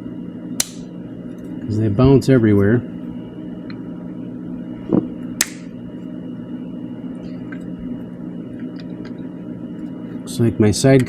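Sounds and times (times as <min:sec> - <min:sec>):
steady low hum: 0:00.0 - 0:11.0
side cutters clipping: 0:00.6 - 0:00.9, 0:05.4 - 0:05.7.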